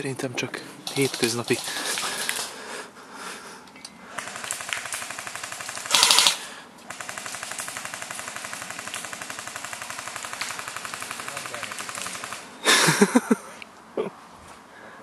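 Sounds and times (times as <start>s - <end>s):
airsoft guns firing full auto: 4.1s - 12.6s.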